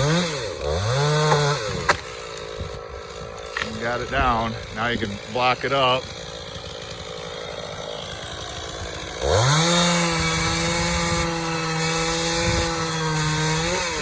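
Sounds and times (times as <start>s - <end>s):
chainsaw idling and revving: 0.0s - 14.0s.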